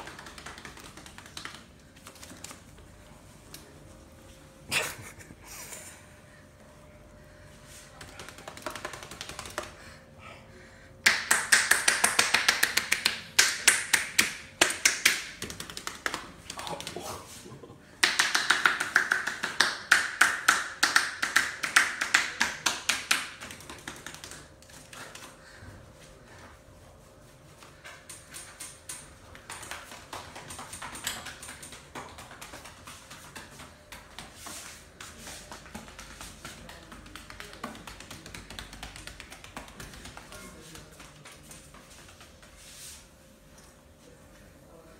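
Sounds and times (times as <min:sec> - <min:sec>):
hands slapping and tapping body: 0:00.0 - 0:02.8, 0:07.7 - 0:09.8, 0:11.0 - 0:17.1, 0:18.0 - 0:25.3, 0:27.6 - 0:42.9.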